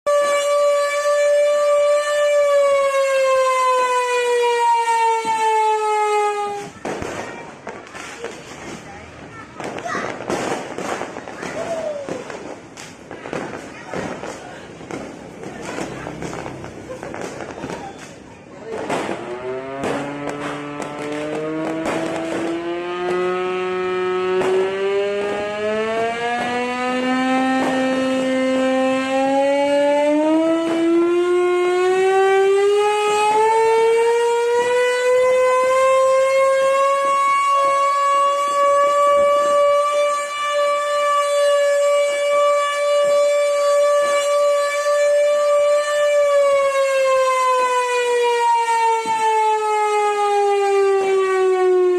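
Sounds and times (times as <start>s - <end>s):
mechanical siren wailing: 0.1s - 6.7s, 19.3s - 51.9s.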